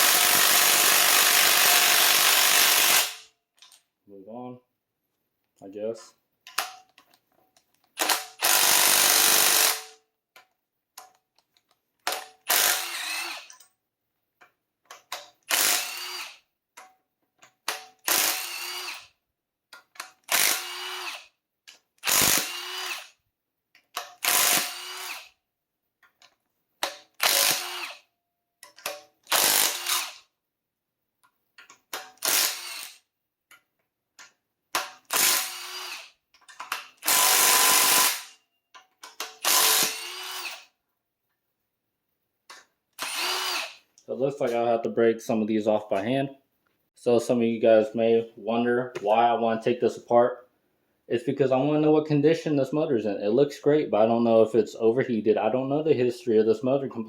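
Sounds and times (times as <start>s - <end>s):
power wrench spinning bolts: 0.0s - 3.2s, 8.0s - 9.9s, 12.1s - 13.6s, 15.0s - 16.4s, 17.7s - 19.1s, 20.0s - 21.3s, 22.0s - 23.1s, 24.0s - 25.4s, 26.8s - 28.0s, 28.6s - 30.2s, 31.9s - 33.0s, 34.8s - 38.4s, 39.0s - 40.7s, 43.0s - 43.8s.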